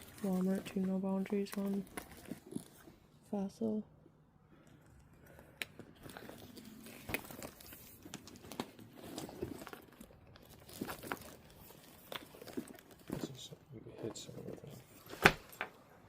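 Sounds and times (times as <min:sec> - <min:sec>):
handbag rustling: 0:00.0 - 0:02.9.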